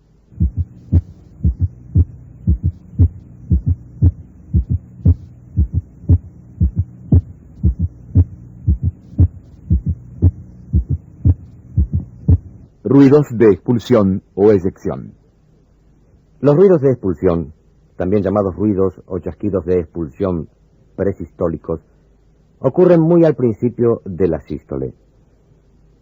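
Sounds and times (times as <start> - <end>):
steady low hum: 0.0 - 26.0
heartbeat thuds: 0.3 - 12.6.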